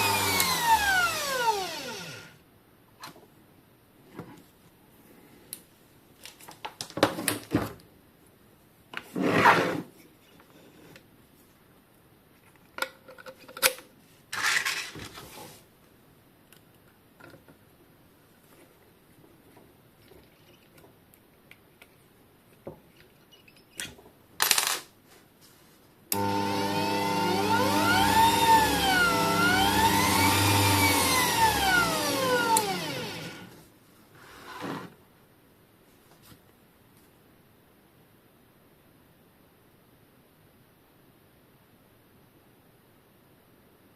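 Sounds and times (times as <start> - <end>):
bench grinder motor whining: 0.0 - 2.4, 26.2 - 33.6.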